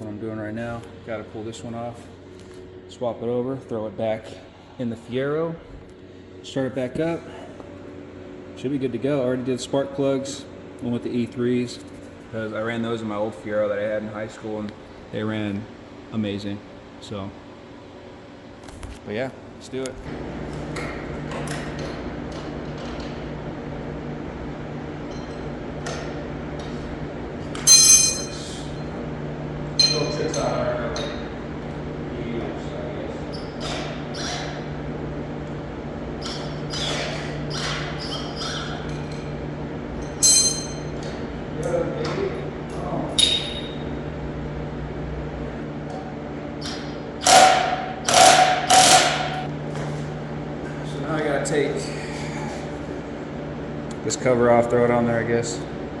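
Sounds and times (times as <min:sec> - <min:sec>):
steady low hum: 0:00.0 - 0:56.0
metal tools clinking: 0:27.7 - 0:28.4, 0:40.0 - 0:40.9
loud ringing metallic clank: 0:27.7 - 0:28.5
impact wrench bursts: 0:46.7 - 0:49.5.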